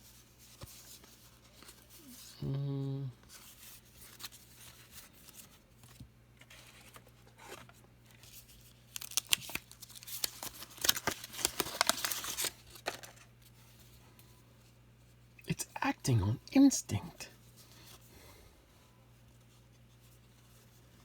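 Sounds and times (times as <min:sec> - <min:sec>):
wrapper tearing and crinkling: 0:08.6 - 0:13.2.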